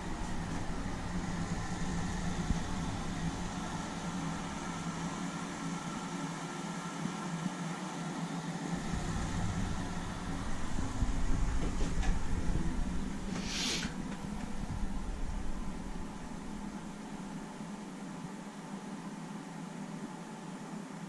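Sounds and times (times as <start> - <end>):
low rumble: 0.0 - 6.2, 8.7 - 18.8
air-conditioner hum: 0.0 - 21.0
short hiss: 13.3 - 14.0.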